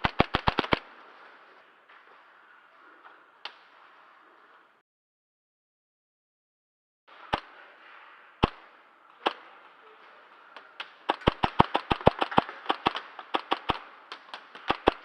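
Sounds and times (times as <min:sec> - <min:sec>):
airsoft guns firing: 0:00.0 - 0:01.0, 0:08.4 - 0:08.6, 0:10.9 - 0:15.0.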